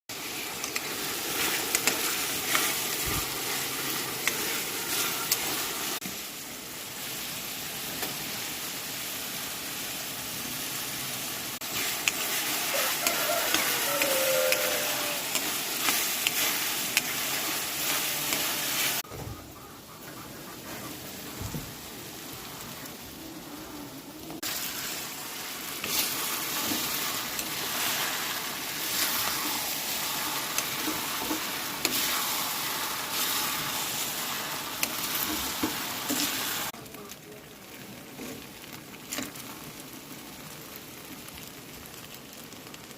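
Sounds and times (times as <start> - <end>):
rice sizzling in a pan: 0.1 - 42.9
spatula scraping a pan: 0.3 - 6.0, 11.7 - 19.0, 25.7 - 36.7.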